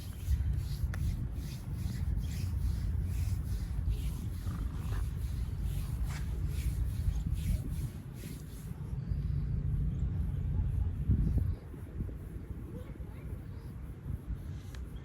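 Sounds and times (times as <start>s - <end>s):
hands rubbing skin: 0.0s - 8.7s.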